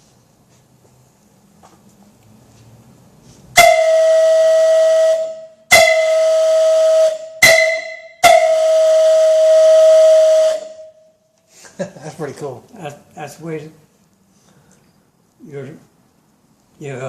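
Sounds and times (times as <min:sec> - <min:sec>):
steam whistle blasts: 0:03.5 - 0:11.1.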